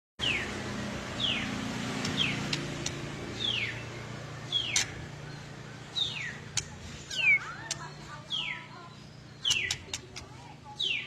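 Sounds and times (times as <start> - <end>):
sharp ticks: 1.2 - 5.3, 5.9 - 8.5, 9.2 - 10.4
bird whistled notes: 4.5 - 10.0.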